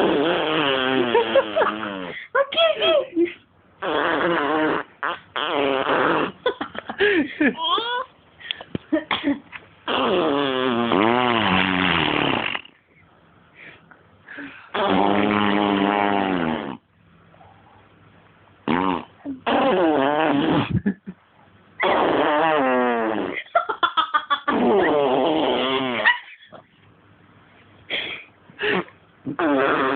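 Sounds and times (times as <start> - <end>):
baby blowing raspberries: 0.0 - 2.1, 3.8 - 6.4, 9.9 - 12.7, 14.7 - 16.8, 18.7 - 20.8, 24.5 - 26.0, 28.6 - 29.9.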